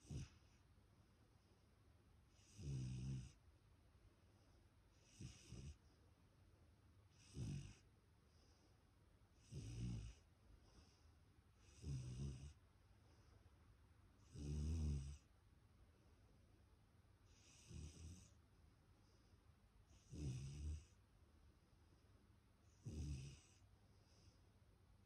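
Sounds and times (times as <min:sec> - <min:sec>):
puppy snoring: 0:00.0 - 0:00.6, 0:02.3 - 0:03.4, 0:05.0 - 0:05.8, 0:07.1 - 0:07.9, 0:09.4 - 0:10.3, 0:11.6 - 0:12.6, 0:14.2 - 0:15.3, 0:17.3 - 0:18.4, 0:19.9 - 0:21.0, 0:22.8 - 0:23.6.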